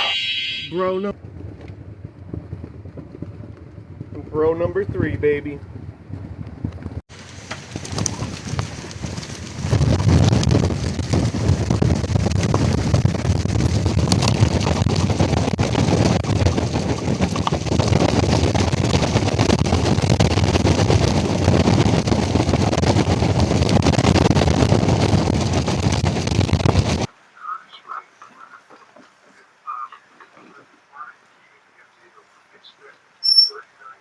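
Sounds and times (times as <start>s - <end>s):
strong wind buffeting microphone: 0.7s - 27.1s.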